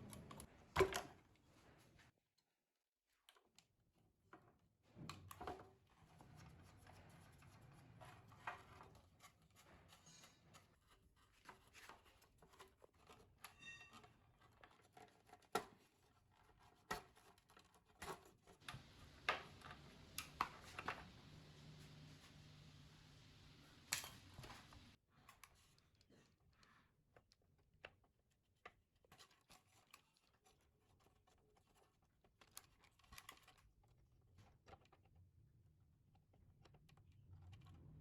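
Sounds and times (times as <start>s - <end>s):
faint low hum: 18.7s - 25.0s.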